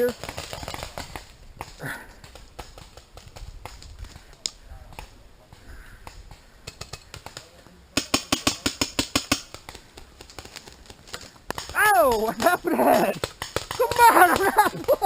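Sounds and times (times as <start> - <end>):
paintball markers firing: 6.0 - 15.0.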